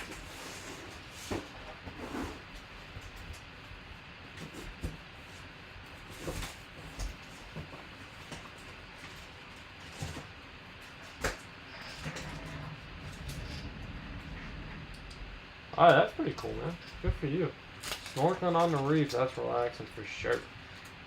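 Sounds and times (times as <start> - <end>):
steady background hiss: 0.0 - 21.0
cards and packaging rustling: 17.2 - 20.9.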